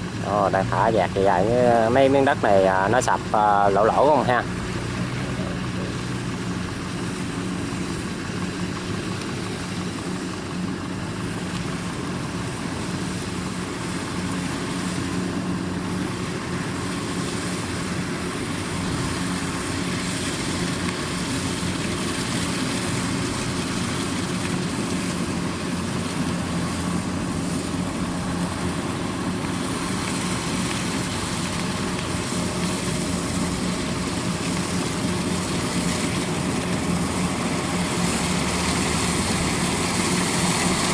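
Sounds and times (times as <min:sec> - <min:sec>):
combine harvester running: 0:00.0 - 0:40.9.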